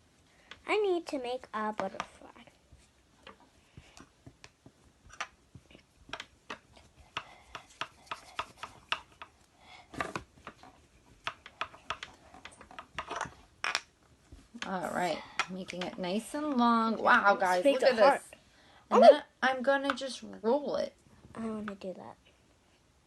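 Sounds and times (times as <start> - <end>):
hands pressing modelling dough: 1.7 - 16.7.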